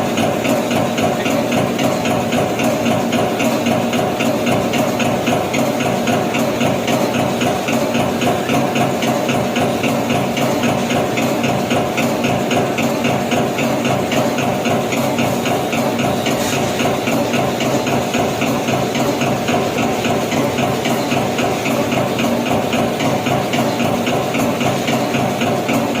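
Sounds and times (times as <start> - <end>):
machine hum: 0.0 - 26.0.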